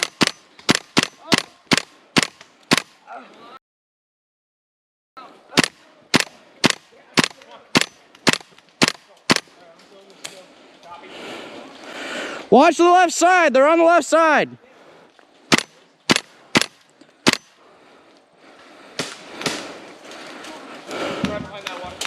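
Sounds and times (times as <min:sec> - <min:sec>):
airsoft gun single shots: 0:00.0 - 0:03.0, 0:15.5 - 0:17.5.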